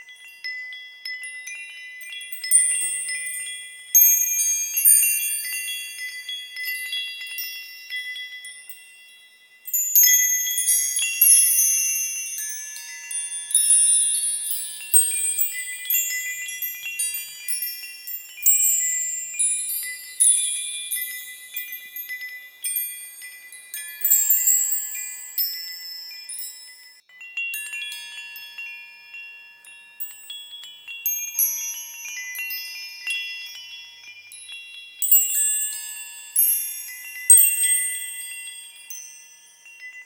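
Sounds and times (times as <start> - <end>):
high-pitched metal chimes: 0.0 - 40.0.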